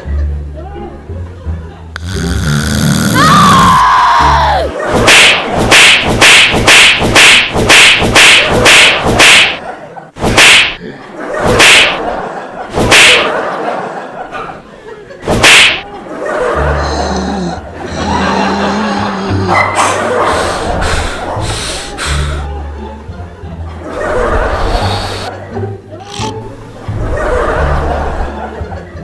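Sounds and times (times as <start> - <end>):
sharp slap or whip-crack hits: 4.9 - 9.6, 10.2 - 10.8, 11.4 - 13.3, 15.2 - 15.9.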